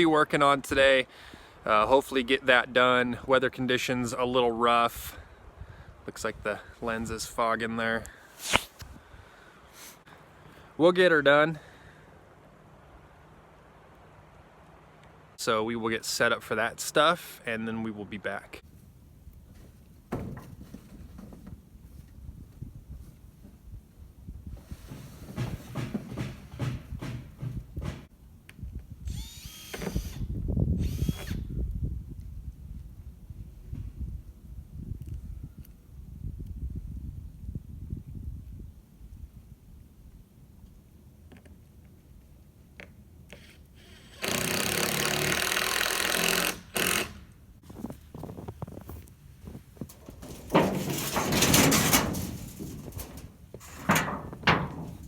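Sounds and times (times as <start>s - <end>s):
uneven knocks and rasps: 19.5s - 23.6s, 24.5s - 28.1s, 46.1s - 55.0s
power drill motor whirring: 29.1s - 31.5s, 43.3s - 47.3s.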